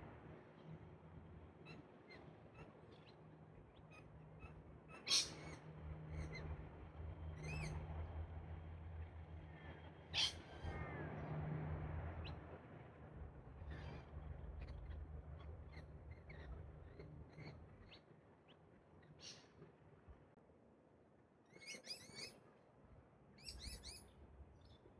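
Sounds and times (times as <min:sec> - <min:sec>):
faint bird chirps: 0:01.7 - 0:06.4, 0:13.7 - 0:19.6, 0:21.5 - 0:22.4, 0:23.4 - 0:24.8
cockatoo calls: 0:03.9 - 0:05.6, 0:10.1 - 0:10.6.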